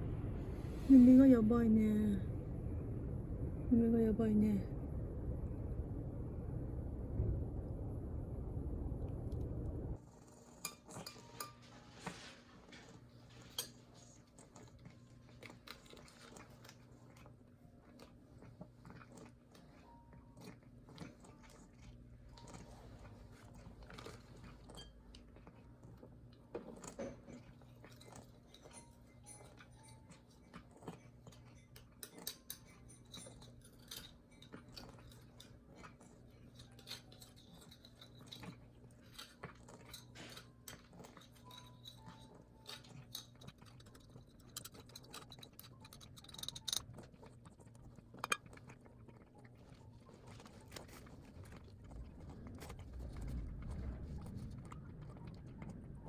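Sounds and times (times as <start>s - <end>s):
low steady hum: 0.0s - 56.0s
cat chewing: 12.1s - 56.0s.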